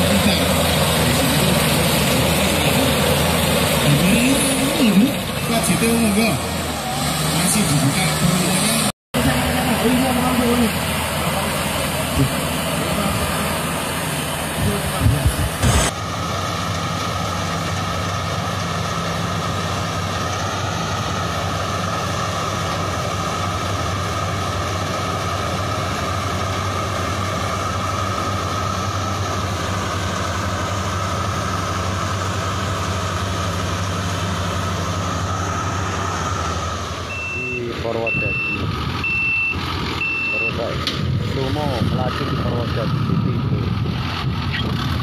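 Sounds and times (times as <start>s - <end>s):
harvester engine running: 0.0s - 45.0s.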